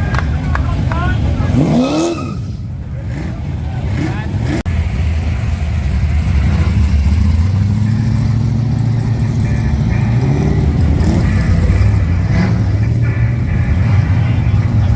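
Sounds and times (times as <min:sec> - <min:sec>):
car engine revving: 0:00.0 - 0:14.9.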